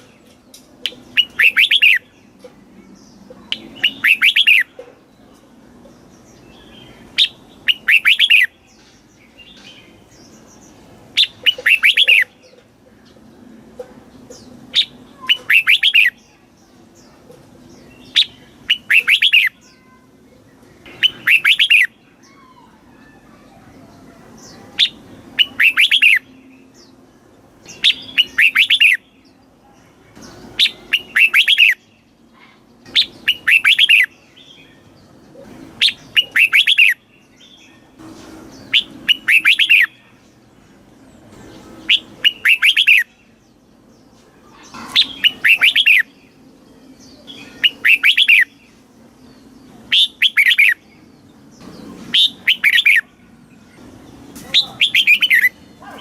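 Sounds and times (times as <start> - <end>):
bird singing warbled phrases: 0.0 - 56.0.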